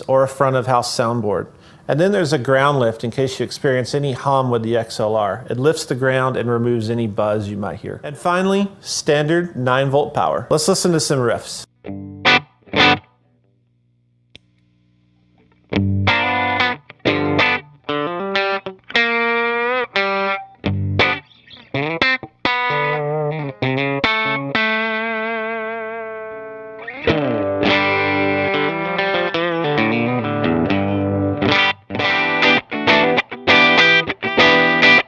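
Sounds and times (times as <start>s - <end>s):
electric guitar riffs: 11.6s - 13.4s, 15.3s - 35.0s.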